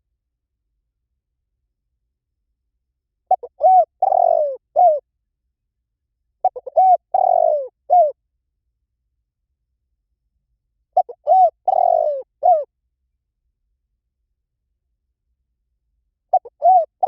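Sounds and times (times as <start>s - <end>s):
dove cooing: 3.3s - 5.0s, 6.4s - 8.2s, 11.0s - 12.7s, 16.3s - 17.0s.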